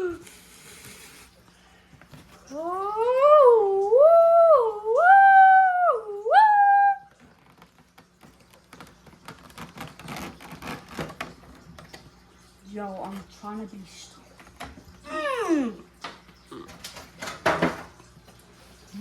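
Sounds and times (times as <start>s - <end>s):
high wordless voice: 2.5s - 7.1s, 15.0s - 15.9s.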